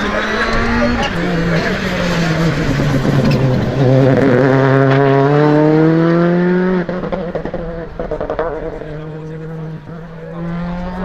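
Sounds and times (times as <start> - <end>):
rally car engine accelerating: 0.0 - 11.0.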